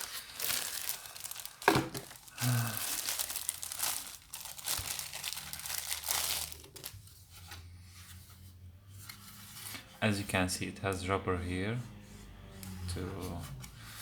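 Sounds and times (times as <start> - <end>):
plastic packaging crinkling: 0.0 - 7.1.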